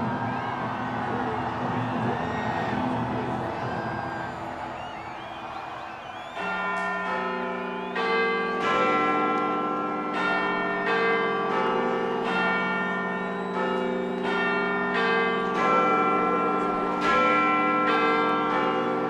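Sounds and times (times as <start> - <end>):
large bells chiming: 6.4 - 19.0.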